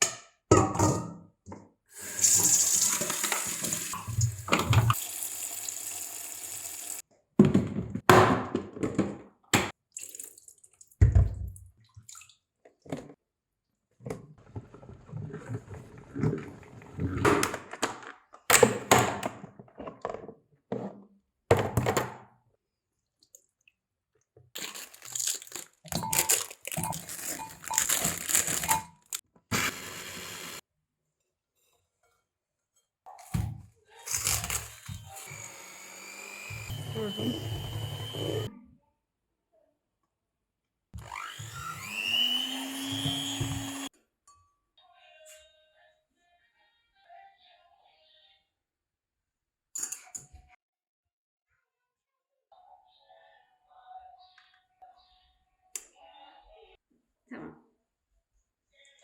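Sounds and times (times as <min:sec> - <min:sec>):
knocks and clatters in sink: 0:00.0 - 0:01.6, 0:03.0 - 0:05.0, 0:07.4 - 0:09.7, 0:11.0 - 0:11.8, 0:14.0 - 0:22.3
tap water running into sink: 0:02.0 - 0:07.0.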